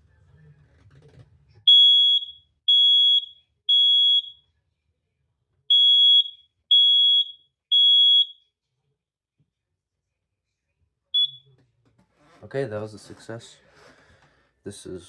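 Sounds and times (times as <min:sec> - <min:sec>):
smoke alarm beeping: 0:01.7 - 0:04.4, 0:05.7 - 0:08.4, 0:11.2 - 0:11.5.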